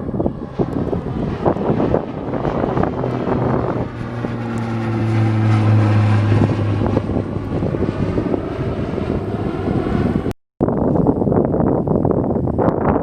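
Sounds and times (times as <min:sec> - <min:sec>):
turboprop engines droning: 0:00.0 - 0:12.7.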